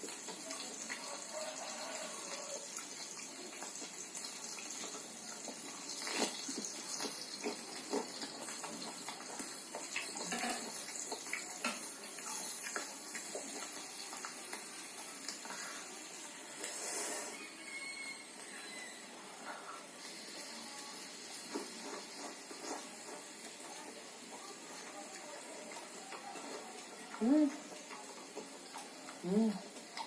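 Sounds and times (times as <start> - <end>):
wet chewing and lip-smacking: 2.8 - 15.5, 21.4 - 30.0.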